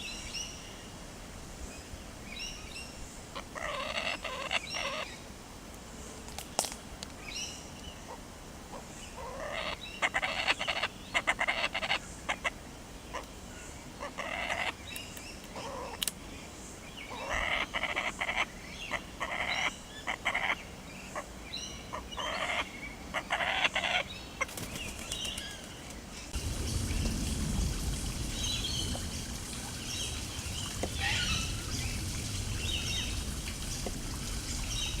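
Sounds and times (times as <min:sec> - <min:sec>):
kookaburra calling: 0:03.4 - 0:05.2, 0:08.1 - 0:13.3, 0:14.0 - 0:14.8, 0:15.5 - 0:16.0, 0:17.1 - 0:21.3, 0:21.9 - 0:24.6, 0:30.8 - 0:31.8
small birds chirping: 0:13.1 - 0:35.0
low wind rumble: 0:24.1 - 0:35.0.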